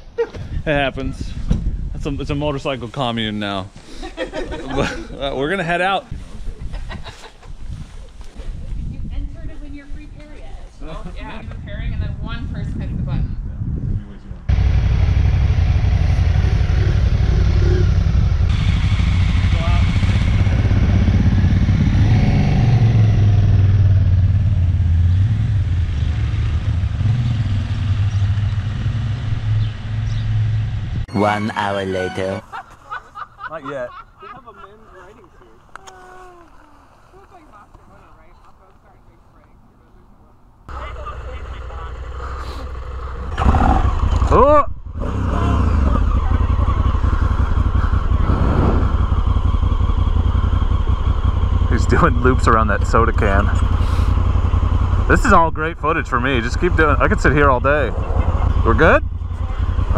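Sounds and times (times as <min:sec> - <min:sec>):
motorcycle engine droning: 0:14.5 - 0:31.1, 0:40.7 - 0:59.9.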